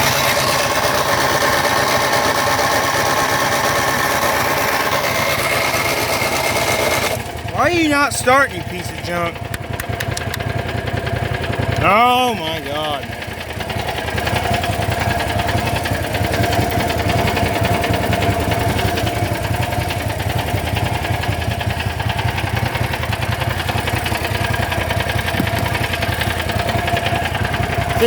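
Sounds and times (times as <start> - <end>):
small engine idling: 0.0 - 28.0
steady engine whine: 7.1 - 28.0.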